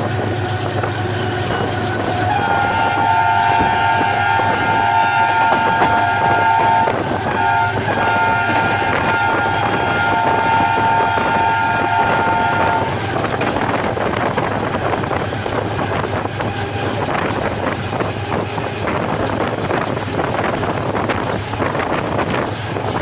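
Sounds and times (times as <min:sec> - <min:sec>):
train horn: 0:00.0 - 0:13.7
moving train rumbling and clattering: 0:00.0 - 0:23.0
wind on microphone: 0:00.0 - 0:23.0.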